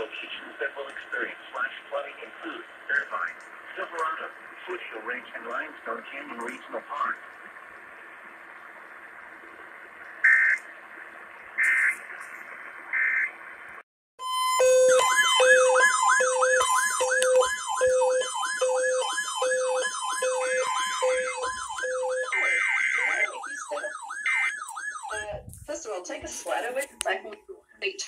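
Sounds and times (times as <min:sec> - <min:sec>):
broadcast hiss: 0:00.0 - 0:13.8, 0:25.1 - 0:28.0
electronic siren whooping: 0:10.2 - 0:10.6, 0:14.2 - 0:25.5
pulsing low beeps: 0:14.2 - 0:25.5
steady tone: 0:14.2 - 0:26.3.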